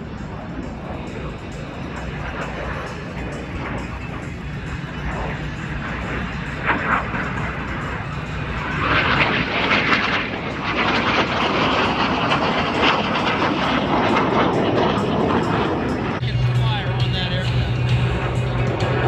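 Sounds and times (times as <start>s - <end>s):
jet flying over: 0.0s - 19.0s.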